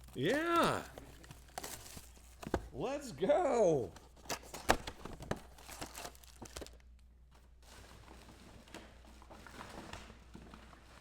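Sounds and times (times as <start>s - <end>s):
card wrappers crinkling and tearing: 0.0s - 2.4s, 4.3s - 6.9s.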